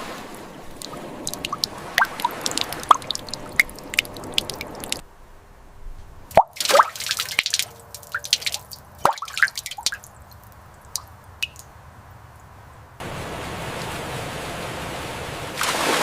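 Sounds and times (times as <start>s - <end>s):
water rushing: 0.0s - 5.0s, 6.3s - 11.6s, 13.0s - 16.0s
water dripping: 0.6s - 5.0s, 6.3s - 12.5s.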